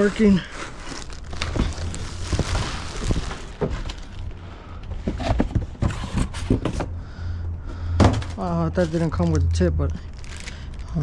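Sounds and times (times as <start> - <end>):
packaging rustle: 0.0 - 4.4, 10.0 - 11.0
steady low hum: 0.6 - 11.0
knocks and clatter of handling: 4.8 - 7.0, 7.9 - 9.1.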